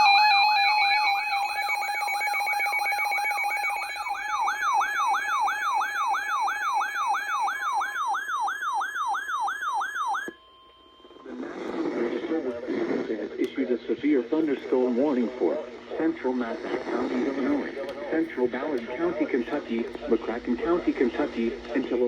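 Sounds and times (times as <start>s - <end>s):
electronic alert siren tone: 0.0s - 10.4s.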